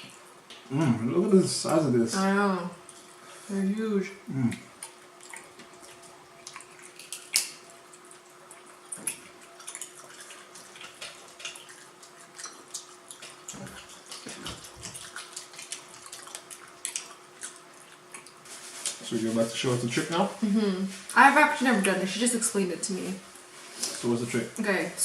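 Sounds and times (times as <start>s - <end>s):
faint hum: 0.0s - 25.0s
wet chewing and smacking: 4.5s - 19.0s.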